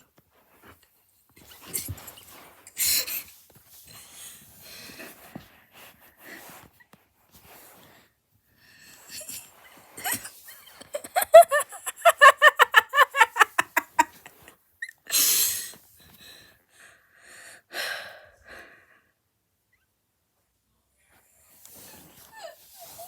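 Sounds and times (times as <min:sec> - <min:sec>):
person wheezing laughter: 0:10.0 - 0:14.5.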